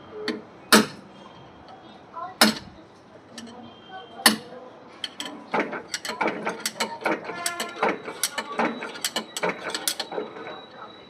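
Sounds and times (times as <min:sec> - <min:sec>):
hand tools clinking on metal: 0:04.3 - 0:10.2.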